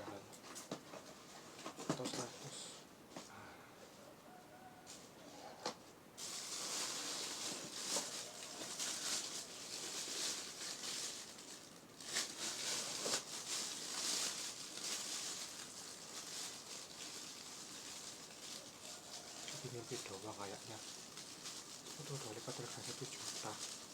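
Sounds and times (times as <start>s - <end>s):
packaging rustling and crinkling: 6.2s - 23.9s.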